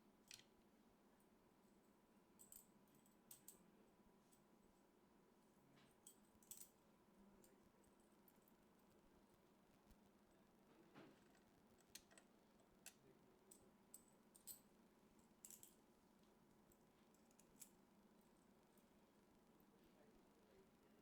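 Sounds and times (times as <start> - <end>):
faint clicks and taps: 8.3 - 14.6.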